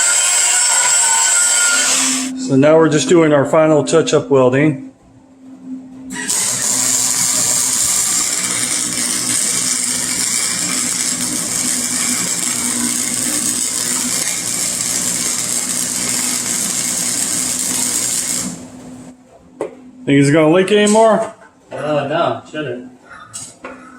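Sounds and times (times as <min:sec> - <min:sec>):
welding arc crackling: 0:06.1 - 0:19.1.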